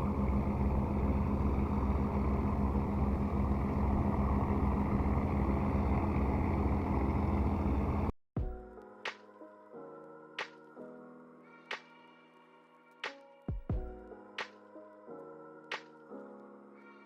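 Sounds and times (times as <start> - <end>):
vehicle engine droning: 0.0 - 8.1.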